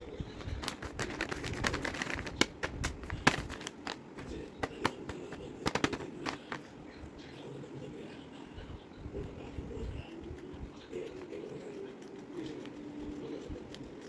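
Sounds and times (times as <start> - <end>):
plastic wrapper crinkling: 0.3 - 6.6.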